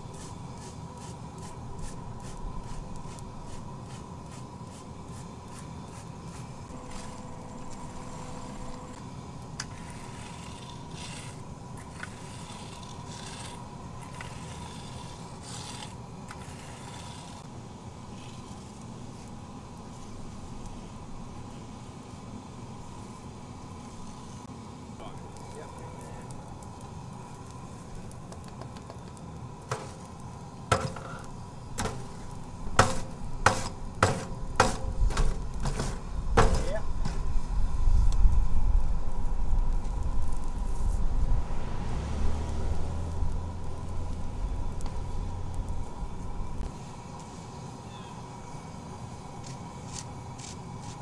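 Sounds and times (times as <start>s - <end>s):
hand tool scraping asphalt: 0.0s - 9.0s, 9.6s - 17.5s, 18.1s - 19.3s, 29.7s - 37.6s
low machine hum: 0.0s - 50.8s
hand tools knocking: 32.8s - 37.2s.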